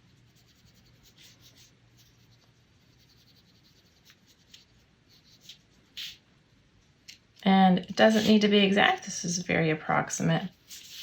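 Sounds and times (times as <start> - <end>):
paintbrush swishing on paper: 0.0 - 6.3, 8.0 - 9.0, 10.4 - 11.0.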